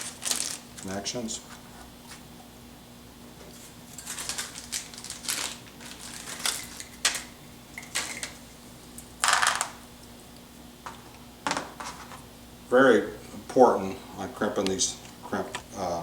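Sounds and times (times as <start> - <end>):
rustling of small parts: 0.0 - 0.9, 3.9 - 7.3.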